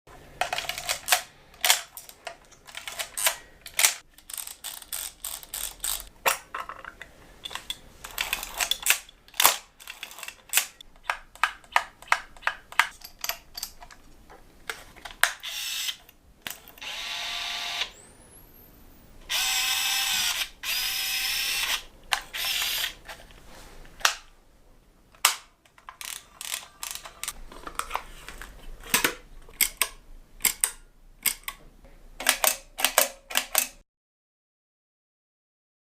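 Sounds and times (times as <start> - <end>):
film camera mechanism clicking: 0.4 - 6.1, 7.5 - 13.0, 19.3 - 23.0, 25.2 - 27.4
camera whirring: 15.4 - 18.0, 19.3 - 23.0.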